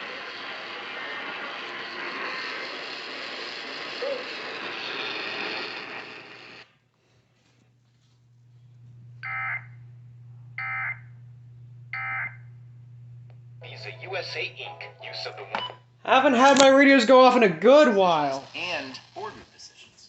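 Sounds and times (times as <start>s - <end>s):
radio hiss: 0.0s - 6.7s, 8.7s - 17.1s, 17.8s - 20.0s
low hum: 7.6s - 17.4s
weather radio alert beeps: 9.2s - 9.8s, 10.6s - 11.2s, 12.0s - 12.5s, 13.6s - 15.8s.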